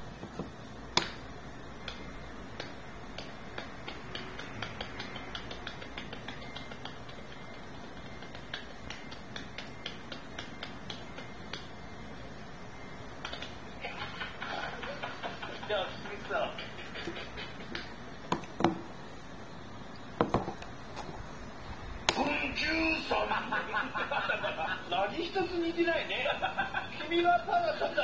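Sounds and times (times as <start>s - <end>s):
light irregular clicks: 1.8s - 11.7s.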